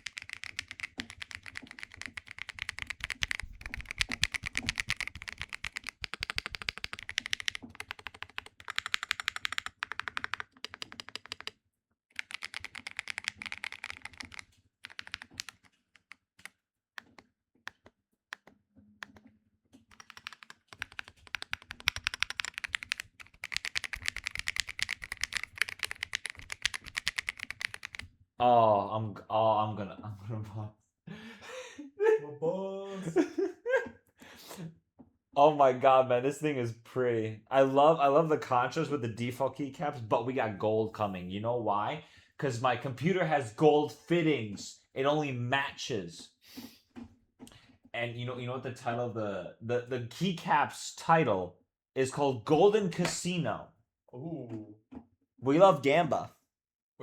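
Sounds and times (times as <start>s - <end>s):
fast typing on keyboard: 0.0s - 19.2s, 19.8s - 28.1s, 53.0s - 53.3s.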